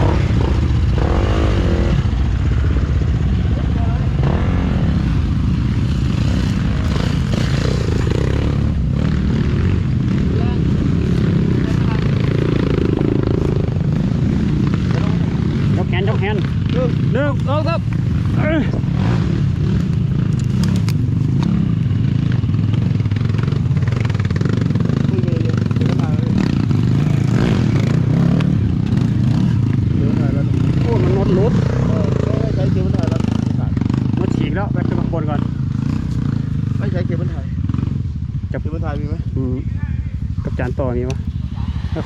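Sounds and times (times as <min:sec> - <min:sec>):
dirt bike engine running: 0:00.0 - 0:42.0
sharp clicks: 0:19.8 - 0:21.5.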